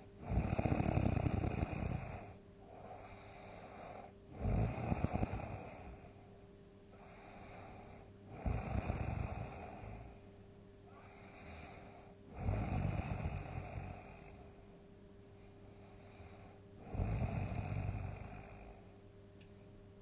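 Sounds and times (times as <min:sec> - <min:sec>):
quiet breaths: 0:00.0 - 0:19.8
person snoring: 0:00.2 - 0:06.1, 0:07.0 - 0:10.2, 0:11.0 - 0:14.5, 0:15.8 - 0:18.9.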